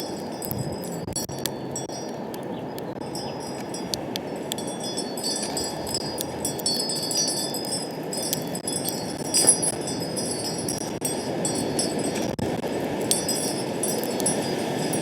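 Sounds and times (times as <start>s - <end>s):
wind blowing: 0.0s - 15.0s
wind chimes tinkling: 0.0s - 15.0s.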